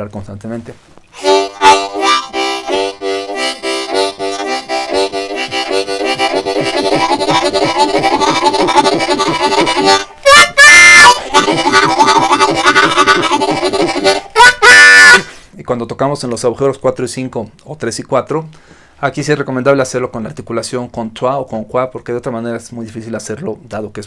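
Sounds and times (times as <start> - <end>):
harmonica train chugging chords: 1.2 - 15.5
high harmonica whistle chord: 1.2 - 15.5.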